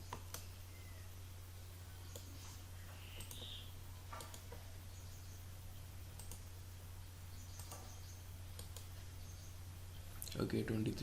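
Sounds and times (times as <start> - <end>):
low electrical hum: 0.0 - 11.0
computer mouse clicks: 0.1 - 0.5, 2.0 - 2.3, 3.2 - 4.6, 6.2 - 6.5, 7.5 - 7.9, 8.5 - 8.9.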